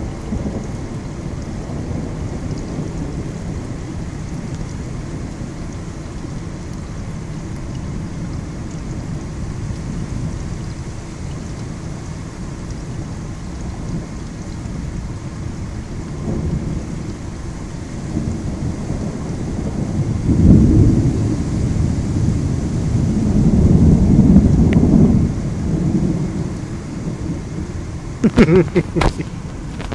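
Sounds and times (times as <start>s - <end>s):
light rain hiss: 0.0s - 29.9s
thunder rumbling: 0.0s - 29.9s.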